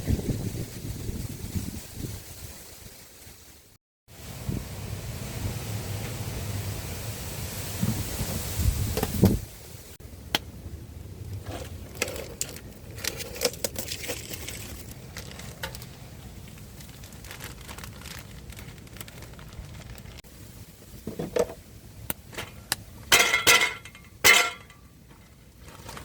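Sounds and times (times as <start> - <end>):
wind buffeting microphone: 0.0 - 3.0, 4.2 - 13.0.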